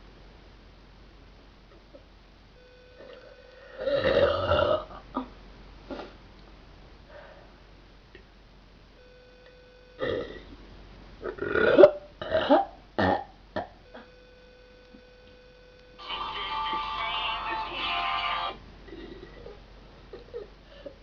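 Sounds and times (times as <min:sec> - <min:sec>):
girl burping: 0:03.8 - 0:05.3, 0:10.0 - 0:10.5.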